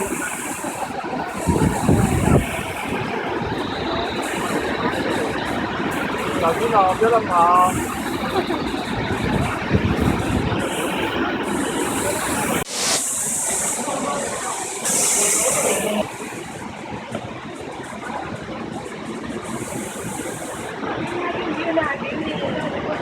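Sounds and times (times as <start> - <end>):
waterfall rushing: 0.0 - 16.7.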